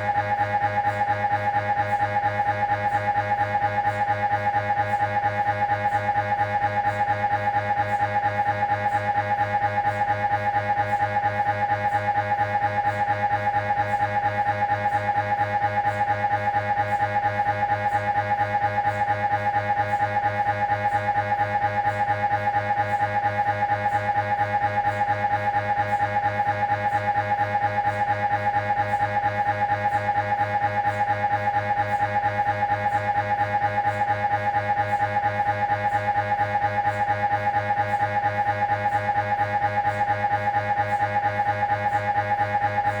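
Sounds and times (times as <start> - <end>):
mri scanner pulsing tone: 0.0 - 43.0.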